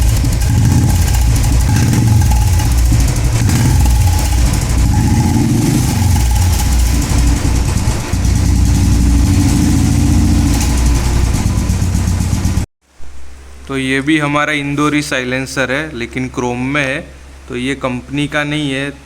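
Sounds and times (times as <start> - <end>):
motorcycle engine idling: 0.0 - 12.7.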